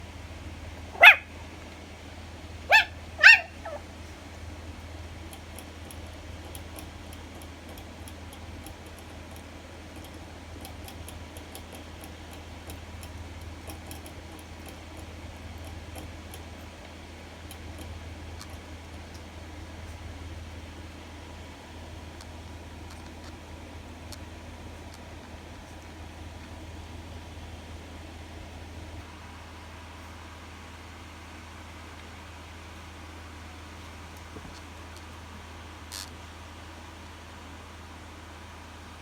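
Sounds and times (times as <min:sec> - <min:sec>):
steady low hum: 0:00.0 - 0:39.0
puppy yapping: 0:00.9 - 0:01.4, 0:02.7 - 0:03.9.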